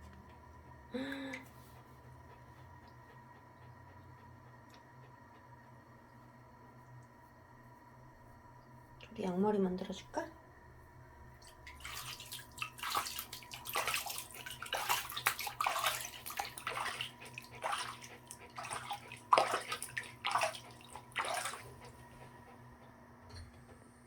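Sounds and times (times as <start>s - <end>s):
water splashing in a bathtub: 11.3s - 22.4s.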